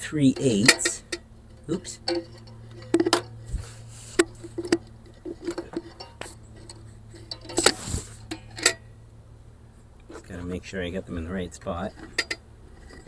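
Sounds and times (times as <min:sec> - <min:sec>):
steel bolts clinking on metal: 0:00.0 - 0:03.4, 0:04.1 - 0:08.9, 0:11.8 - 0:13.0
low steady hum: 0:00.0 - 0:13.0.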